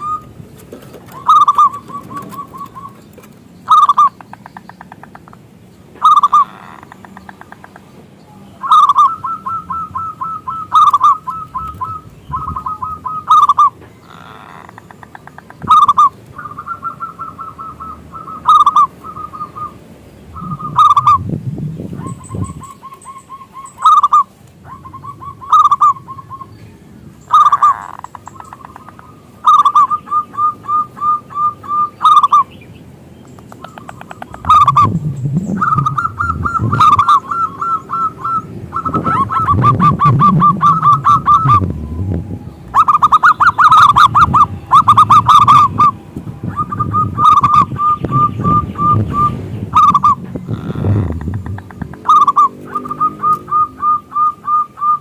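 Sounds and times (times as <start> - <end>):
dove cooing: 0.0 - 4.3, 6.0 - 7.8, 8.6 - 21.3, 21.9 - 26.6, 27.3 - 32.5, 33.4 - 55.0.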